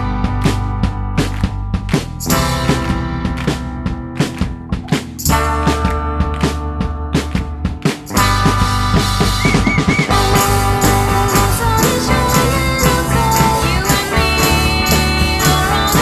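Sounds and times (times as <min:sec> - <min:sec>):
indie pop band with drums: 0:00.0 - 0:16.0
plucked notes: 0:00.0 - 0:16.0.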